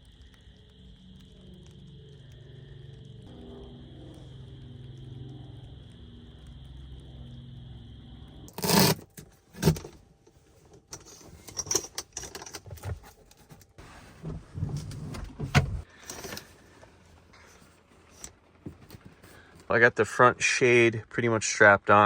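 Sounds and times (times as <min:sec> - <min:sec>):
steady hum with high tone: 0:00.0 - 0:11.8
handling knocks and scrapes: 0:08.6 - 0:19.7.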